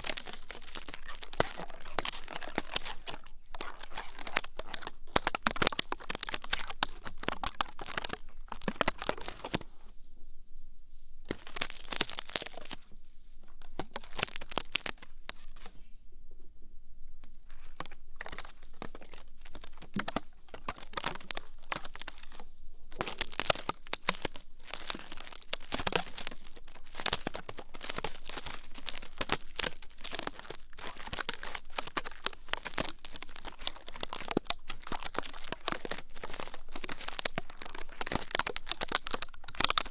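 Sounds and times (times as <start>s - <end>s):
ear-cleaning crackling and scratching: 0.0s - 10.2s, 11.0s - 15.9s, 17.3s - 39.9s.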